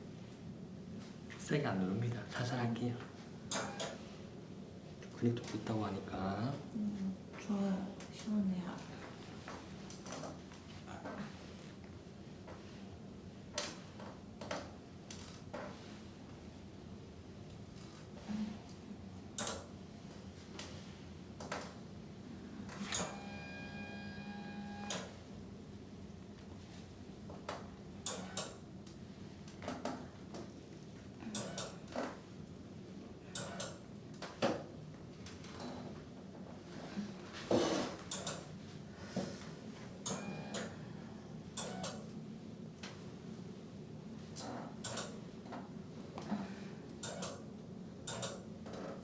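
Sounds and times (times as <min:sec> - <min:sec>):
massage rustles and clicks: 0:13.5 - 0:16.4, 0:33.4 - 0:40.3
steady hum-like tone: 0:14.9 - 0:34.2, 0:34.8 - 0:48.6.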